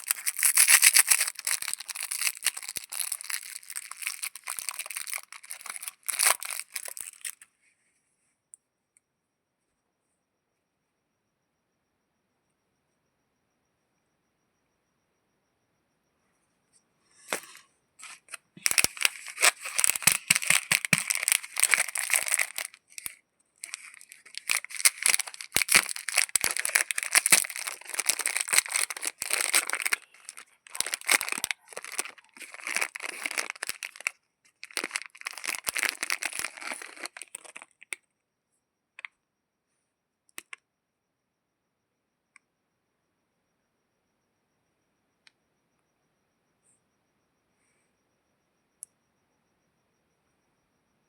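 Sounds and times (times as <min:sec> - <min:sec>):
wrapper tearing and crinkling: 0:00.0 - 0:07.4, 0:18.0 - 0:37.7.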